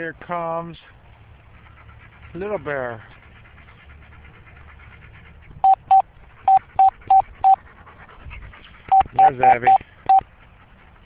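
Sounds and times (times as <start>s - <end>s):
short electronic beeps: 5.6s - 7.6s, 8.9s - 10.2s.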